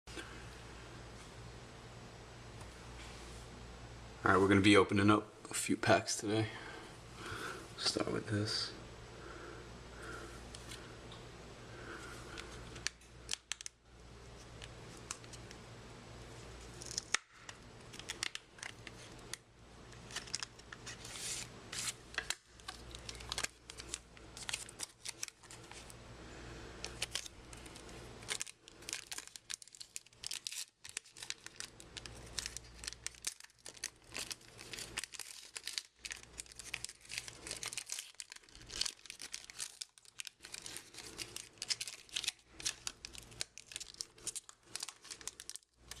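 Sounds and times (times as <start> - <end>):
plastic wrapper tearing and crinkling: 12.3 - 13.8, 16.6 - 26.0, 26.8 - 46.0
cards being handled: 20.0 - 25.9.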